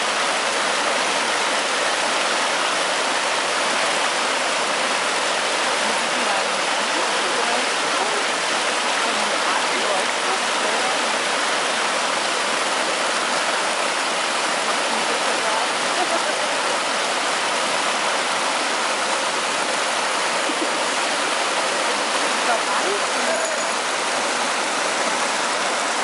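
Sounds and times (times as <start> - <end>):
rushing water hiss: 0.0 - 26.0.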